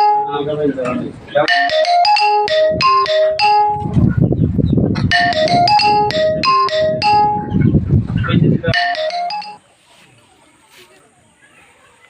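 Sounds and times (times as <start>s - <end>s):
marimba-like melody: 0.0s - 0.5s, 1.4s - 4.4s, 5.0s - 7.8s, 8.7s - 9.6s.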